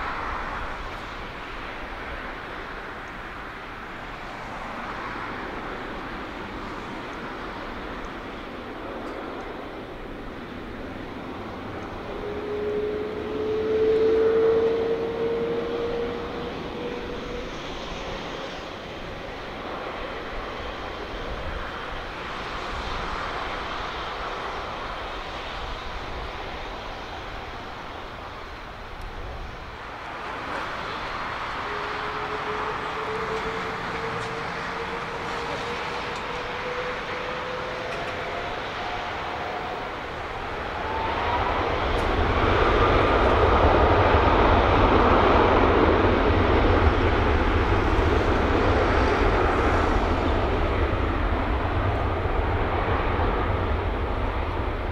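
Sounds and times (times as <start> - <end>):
jet engines spooling up: 0.0 - 54.9.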